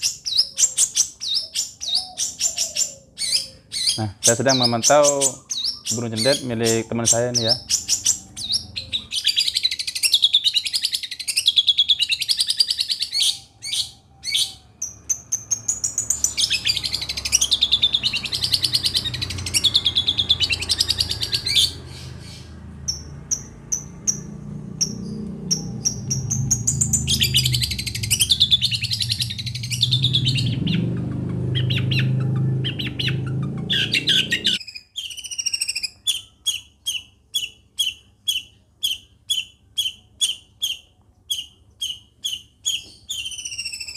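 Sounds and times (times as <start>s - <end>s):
bird singing warbling song: 0.0s - 43.9s
low background rumble: 20.0s - 34.6s.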